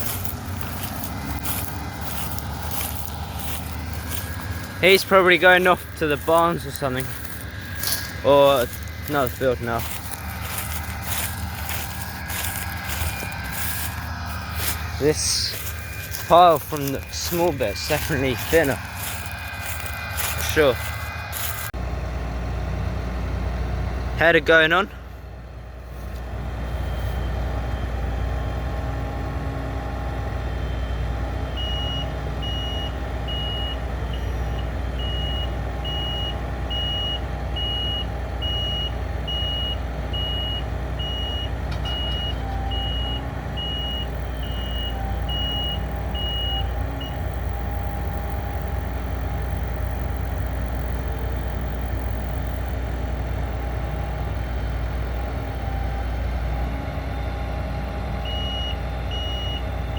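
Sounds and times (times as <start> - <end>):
reversing alarm beeping: 0.0 - 21.7, 30.4 - 50.4, 57.3 - 59.9
combine harvester engine running: 0.0 - 59.9.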